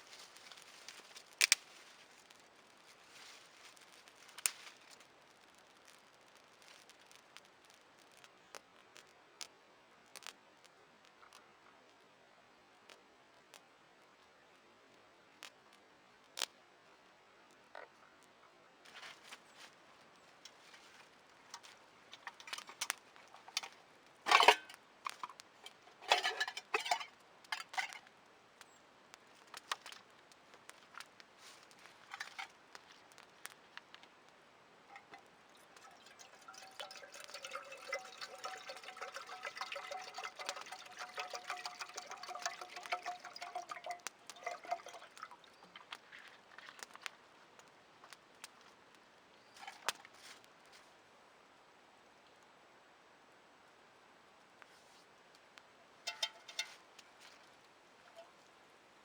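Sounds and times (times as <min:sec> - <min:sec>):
water pouring: 0:21.5 - 0:28.0, 0:32.0 - 0:32.6, 0:34.9 - 0:46.9, 0:56.1 - 0:58.4.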